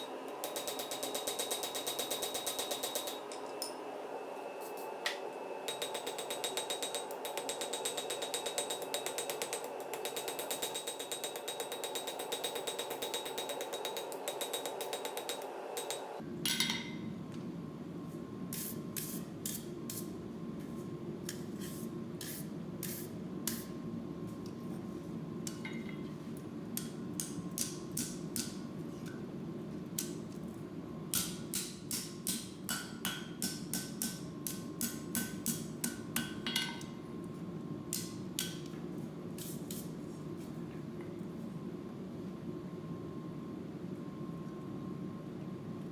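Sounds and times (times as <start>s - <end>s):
hammer striking steel on anvil: 0.4s - 3.8s, 5.1s - 17.1s, 31.1s - 37.0s.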